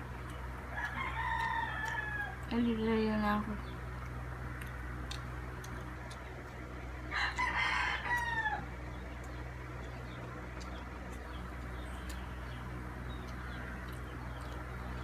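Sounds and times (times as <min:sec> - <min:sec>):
steady low hum: 0:00.0 - 0:15.0
rooster crowing: 0:00.6 - 0:02.5, 0:07.1 - 0:08.8.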